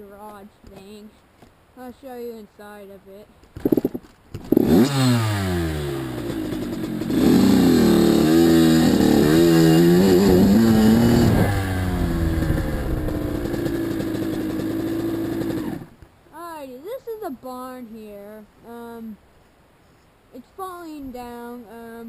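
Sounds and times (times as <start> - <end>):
dirt bike engine revving: 3.6 - 16.0.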